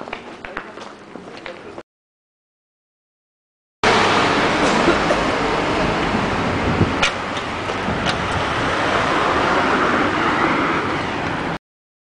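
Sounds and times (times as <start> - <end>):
road traffic noise: 3.8 - 11.6.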